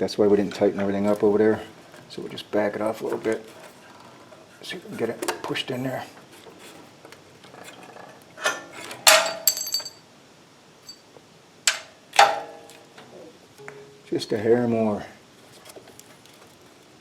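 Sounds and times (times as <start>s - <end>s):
metal clinks and clanks: 8.4s - 10.0s, 10.8s - 11.0s, 11.7s - 12.7s.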